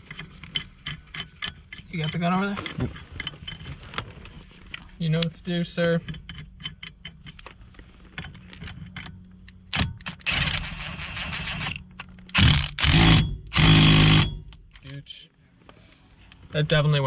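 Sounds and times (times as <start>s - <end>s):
impact gun whirring: 9.7s - 14.7s
impact gun hammering: 12.4s - 14.5s.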